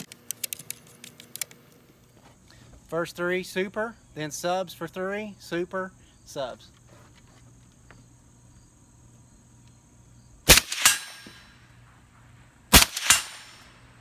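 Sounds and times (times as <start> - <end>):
suppressed gunshots: 10.5 - 11.5, 12.7 - 13.7
bullet clanging on steel target: 10.8 - 11.6.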